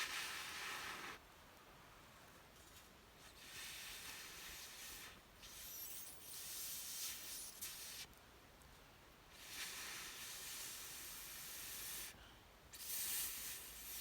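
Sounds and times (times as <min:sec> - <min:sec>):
campfire hissing: 0:00.0 - 0:01.2.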